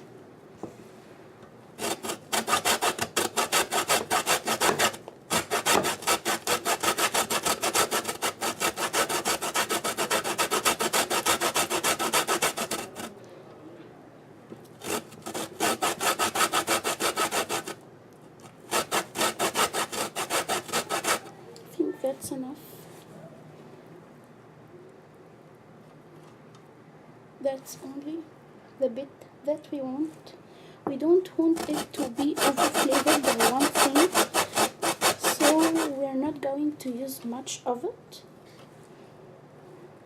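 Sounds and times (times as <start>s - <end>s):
grater rasping on lemon rind: 1.8s - 13.1s, 14.8s - 17.8s, 18.4s - 21.3s, 31.5s - 36.0s.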